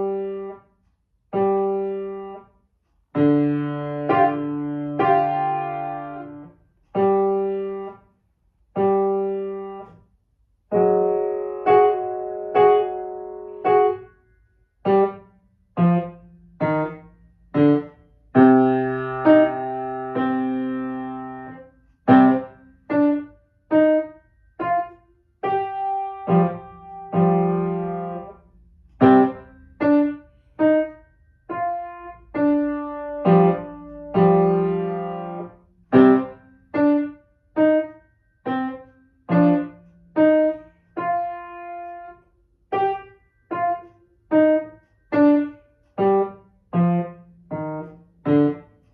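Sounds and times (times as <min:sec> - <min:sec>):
piano notes and chords: 0:00.0 - 0:00.6, 0:01.3 - 0:02.5, 0:03.1 - 0:08.1, 0:08.7 - 0:10.0, 0:10.7 - 0:48.9.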